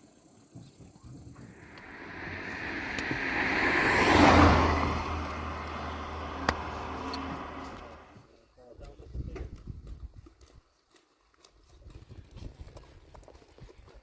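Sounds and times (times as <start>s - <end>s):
vehicle passing by: 1.5s - 8.2s.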